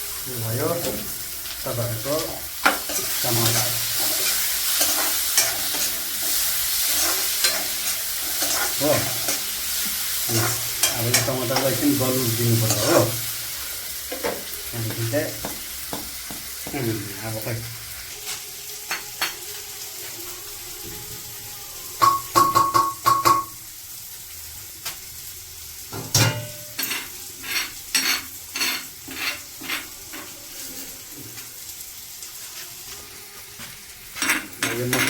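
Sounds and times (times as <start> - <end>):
food sizzling in a pan: 0.0 - 35.0
metal spoon scraping a pan: 0.8 - 15.0, 26.1 - 31.0.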